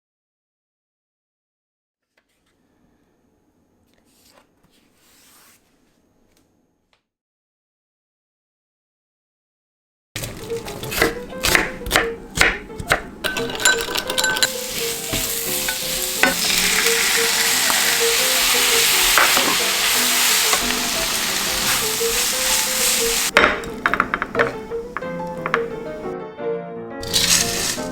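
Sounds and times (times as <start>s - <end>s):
spatula knocking and scraping pan: 10.3s - 26.1s, 27.0s - 27.9s
food sizzling in a pan: 14.4s - 23.4s, 27.0s - 27.9s.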